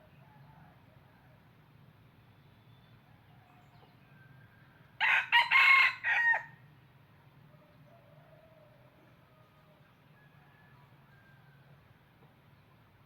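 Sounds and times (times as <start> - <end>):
rooster crowing: 4.3 - 6.6.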